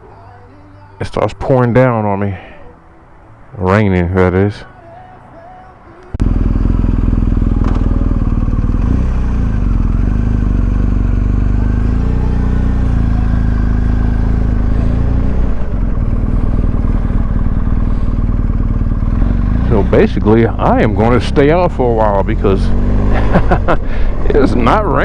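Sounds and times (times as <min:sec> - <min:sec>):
motorcycle engine running: 0:06.2 - 0:25.0.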